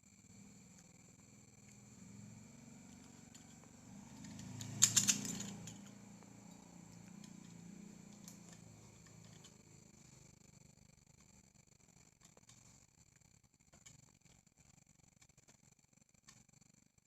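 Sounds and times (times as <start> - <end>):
faint steady hum: 0.0 - 17.0
light clinks: 2.9 - 9.8.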